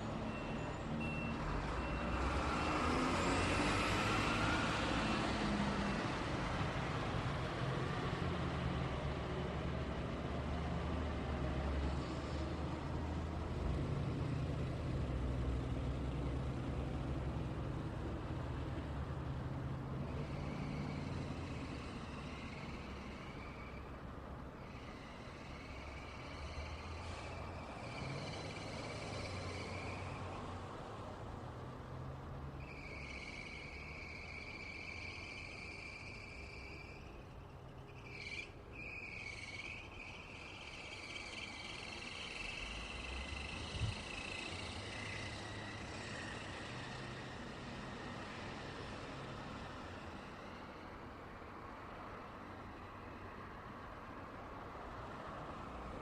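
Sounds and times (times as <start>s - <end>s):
traffic engine rumble: 0.0s - 56.0s
reversing alarm beeping: 0.2s - 2.9s.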